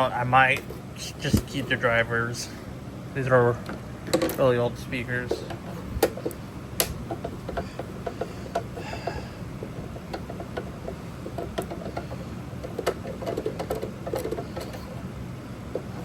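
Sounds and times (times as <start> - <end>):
low steady hum: 0.0 - 16.0
plastic clicks and knocks: 3.6 - 4.4, 5.3 - 15.0.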